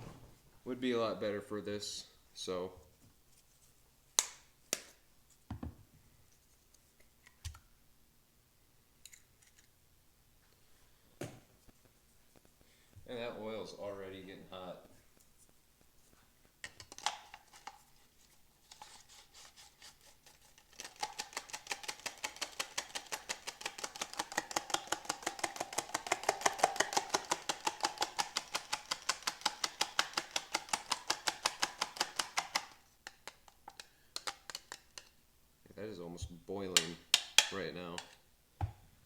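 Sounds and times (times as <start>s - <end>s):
fork beating egg in a bowl: 19.4s - 35.2s.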